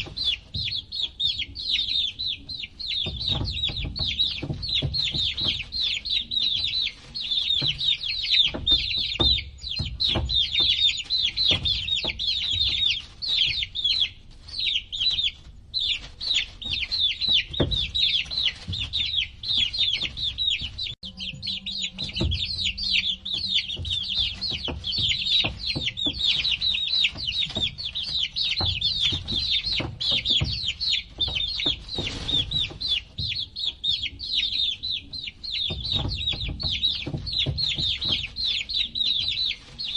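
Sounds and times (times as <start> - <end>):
baby chicks peeping: 0.0 - 39.9.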